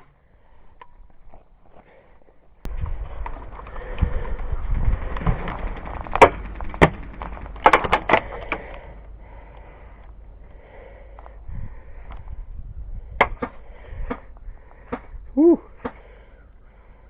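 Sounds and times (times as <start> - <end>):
wind rumble on microphone: 2.6 - 15.8.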